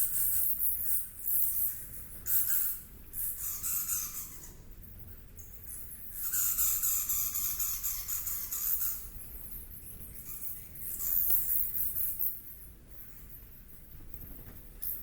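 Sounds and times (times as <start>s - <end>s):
insects trilling: 0.0s - 4.5s, 5.7s - 12.4s
low background noise: 0.0s - 15.0s.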